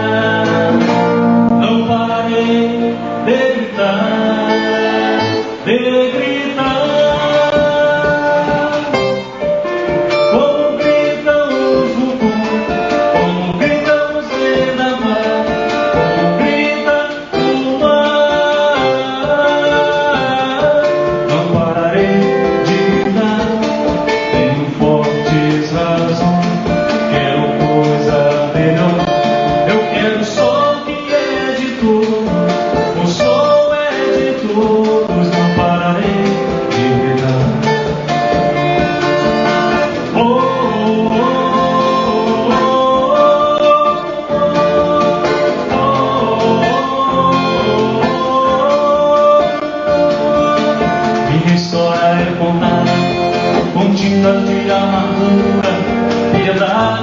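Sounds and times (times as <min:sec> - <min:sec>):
guitar playing: 0:00.0 - 0:57.0
person singing: 0:00.0 - 0:57.0.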